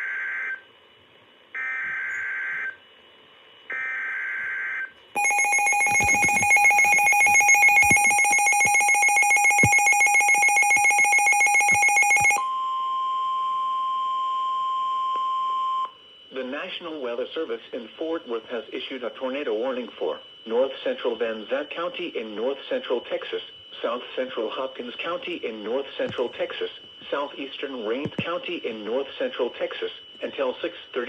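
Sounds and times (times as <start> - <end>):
rapidly pulsing alarm: 1.5 - 3.0, 3.7 - 31.0
steady warning alarm tone: 1.5 - 3.0, 3.7 - 31.0
screeching digital data bursts: 5.2 - 12.4.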